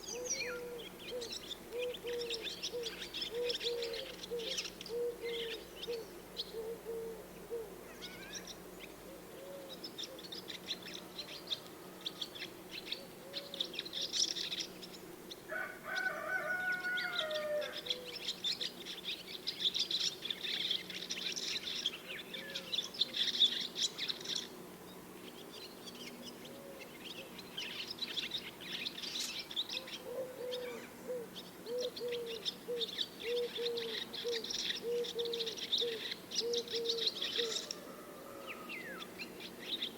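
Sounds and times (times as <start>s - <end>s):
swallows twittering: 7.9s - 8.9s, 25.3s - 37.8s.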